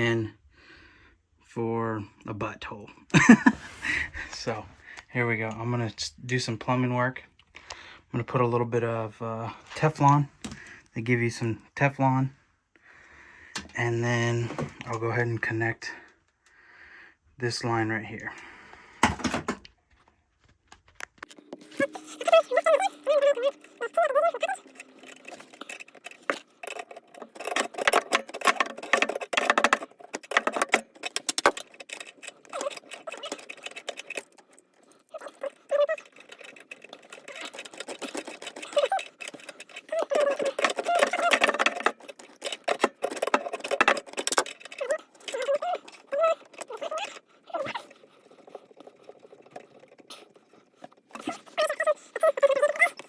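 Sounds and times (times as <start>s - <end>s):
fitting being threaded on: 21.1s - 53.0s.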